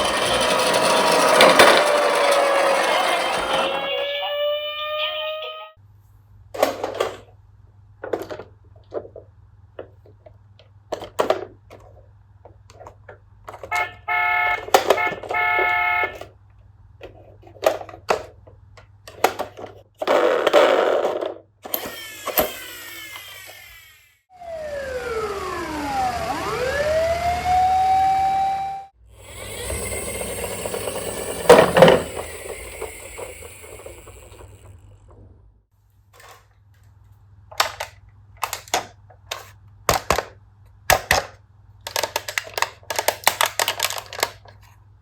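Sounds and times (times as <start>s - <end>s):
siren gliding down and up: 1.8s - 5.8s, 14.1s - 16.1s, 22.0s - 34.5s
pulsing siren tone: 24.3s - 34.5s.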